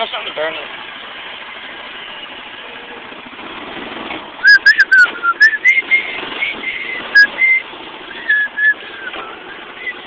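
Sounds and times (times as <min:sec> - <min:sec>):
short whistled notes: 0:04.4 - 0:10.0.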